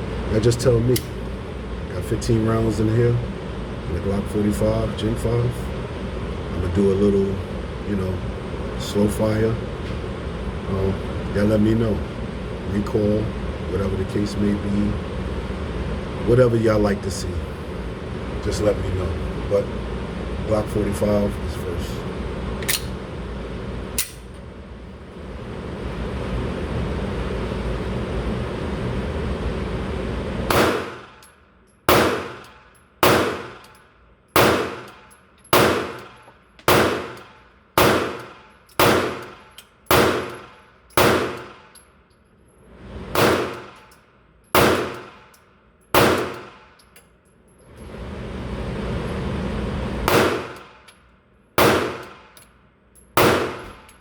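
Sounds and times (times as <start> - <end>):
pistol shots: 30.5 - 31.2, 31.9 - 33.8, 34.4 - 41.7, 43.2 - 43.9, 44.6 - 45.3, 46.0 - 46.7, 50.1 - 50.8, 51.6 - 52.4, 53.2 - 53.8.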